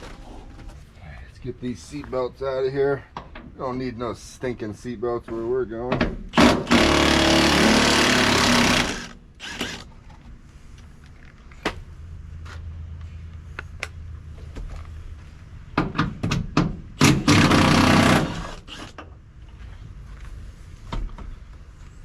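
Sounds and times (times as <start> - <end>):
impact wrench running: 6.3 - 9.9, 17.0 - 19.0.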